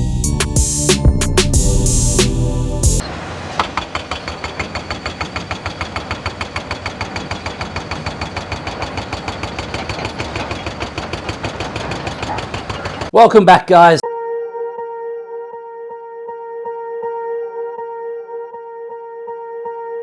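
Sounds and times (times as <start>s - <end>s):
heavy construction machine clattering: 3.2s - 13.1s.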